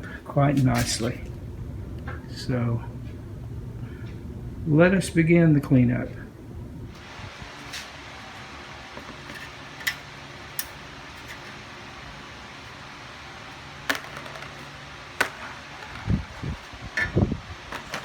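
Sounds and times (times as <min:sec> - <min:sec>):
steady low hum: 0:00.0 - 0:18.0
metal toolbox clicks and knocks: 0:17.0 - 0:18.0.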